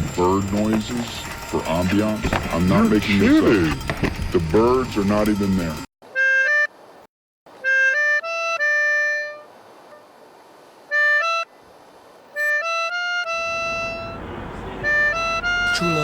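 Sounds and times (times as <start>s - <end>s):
harmonica phrases: 0.0s - 6.7s, 12.4s - 16.0s.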